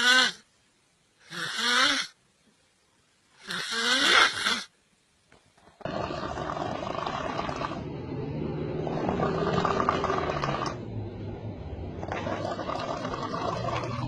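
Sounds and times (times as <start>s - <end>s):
person snoring: 1.3s - 2.2s, 3.4s - 4.7s, 5.8s - 10.8s.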